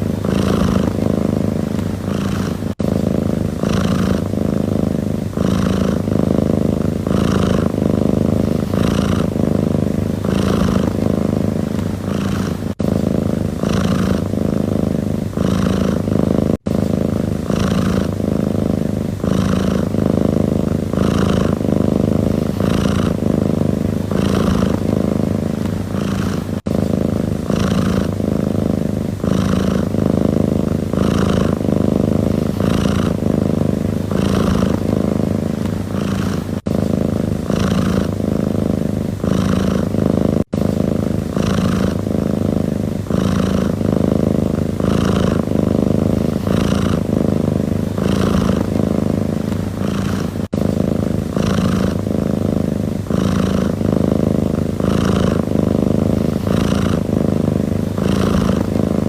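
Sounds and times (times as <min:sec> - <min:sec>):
cat purring: 0:00.0 - 0:59.0.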